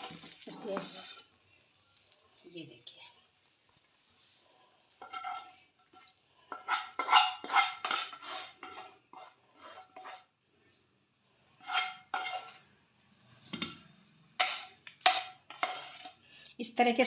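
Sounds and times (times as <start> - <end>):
metal spoon scraping a metal pan: 0.0 - 1.4, 4.9 - 10.4, 11.3 - 12.7, 13.5 - 16.3.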